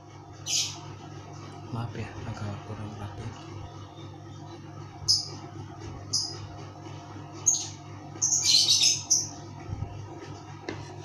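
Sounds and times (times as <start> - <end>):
steady low hum: 0.0 - 11.0
small bird chirping: 0.4 - 0.8, 5.0 - 5.4, 6.1 - 6.5, 7.4 - 9.4.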